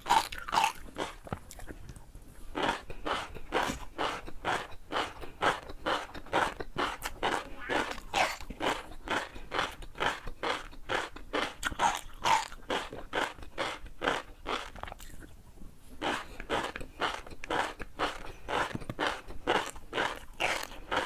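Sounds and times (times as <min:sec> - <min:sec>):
chewing crunchy food: 0:00.0 - 0:21.0.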